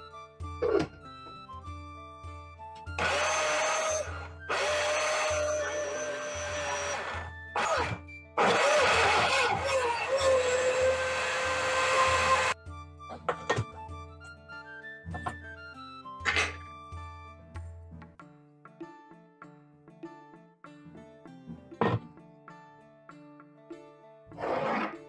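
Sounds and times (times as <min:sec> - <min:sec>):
background music: 0:00.0 - 0:25.0
small motor whining: 0:03.0 - 0:12.6.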